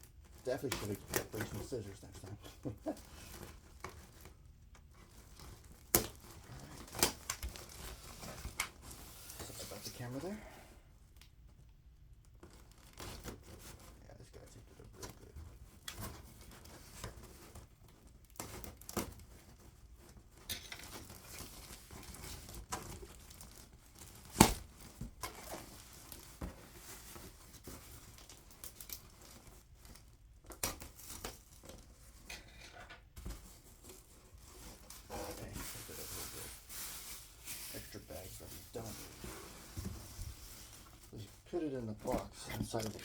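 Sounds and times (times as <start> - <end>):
plastic bags crinkling: 0.1 - 10.5, 12.3 - 14.5, 15.2 - 32.3, 33.3 - 43.0
packing tape ripping: 5.4 - 9.0, 21.0 - 26.3.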